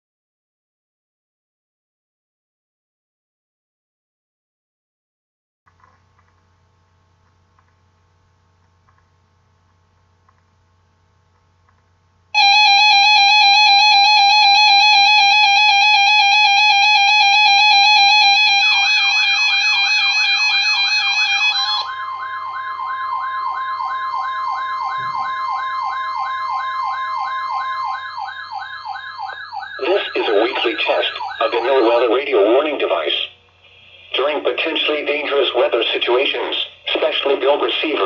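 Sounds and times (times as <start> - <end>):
steady high alert tone: 12.4 - 38.0
warbling electronic alert tone: 18.2 - 32.6.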